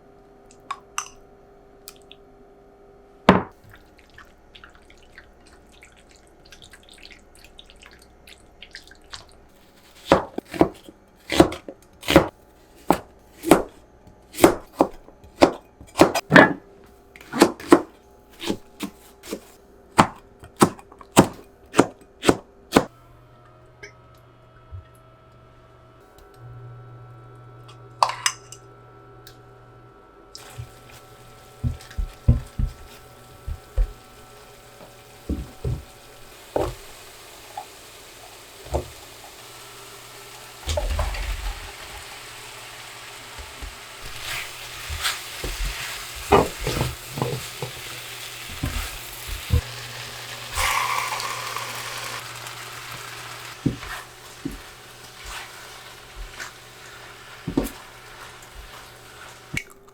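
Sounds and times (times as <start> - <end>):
food sizzling: 30.4 - 59.7.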